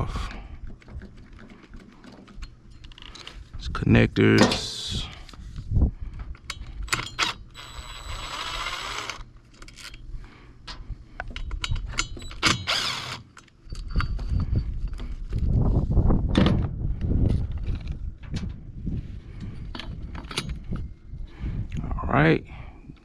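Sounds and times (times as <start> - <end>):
low rumbling handling noise: 0.0 - 8.2, 9.2 - 22.0
metal parts clicking and scraping: 0.6 - 3.6, 6.3 - 15.4, 19.4 - 20.9.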